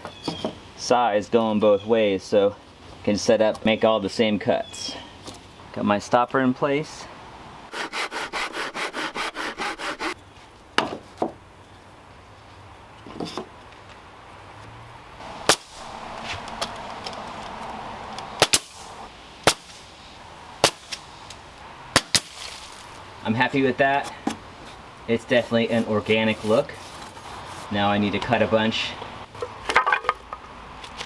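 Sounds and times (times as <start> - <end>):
hand saw cutting wood: 7.7 - 10.2.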